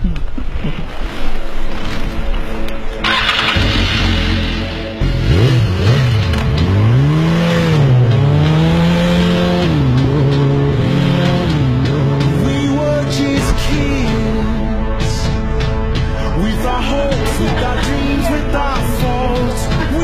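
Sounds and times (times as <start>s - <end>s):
engine revving: 3.0s - 14.1s.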